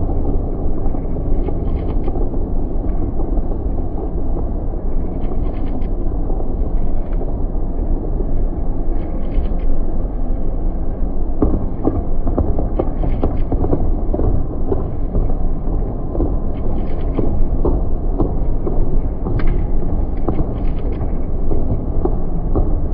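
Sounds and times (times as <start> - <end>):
fireworks rumbling: 11.3 - 22.9.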